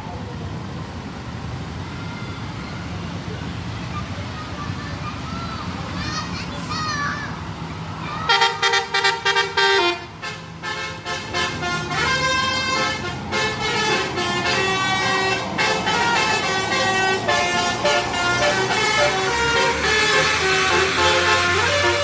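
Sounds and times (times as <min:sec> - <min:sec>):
musical bus air horn: 0:08.3 - 0:22.0.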